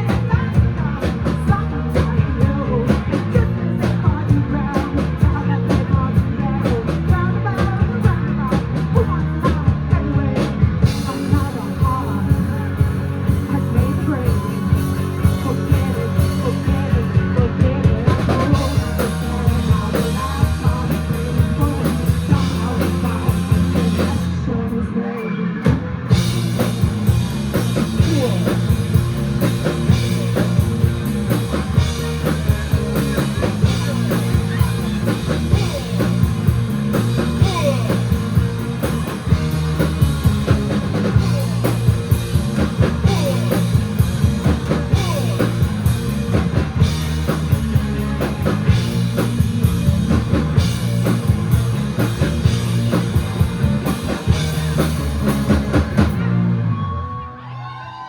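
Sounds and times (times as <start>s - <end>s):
drum kit beat: 0.0s - 24.3s, 26.0s - 56.2s
person singing: 0.0s - 27.0s, 27.6s - 46.4s
bass guitar: 0.0s - 58.0s
electric guitars: 0.0s - 58.0s.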